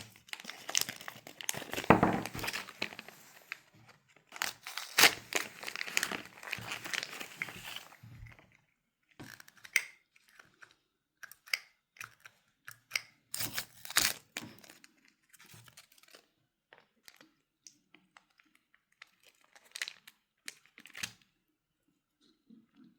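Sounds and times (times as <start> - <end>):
packaging tearing and crinkling: 0.0 - 3.6, 4.2 - 8.0, 13.3 - 16.2, 19.0 - 21.1.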